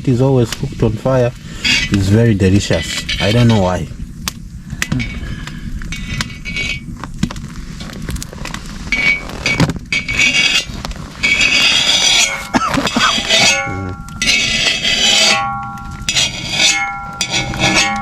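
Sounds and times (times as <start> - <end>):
metal utensils scraping a pan: 1.5 - 3.8, 5.9 - 6.9, 8.9 - 18.0.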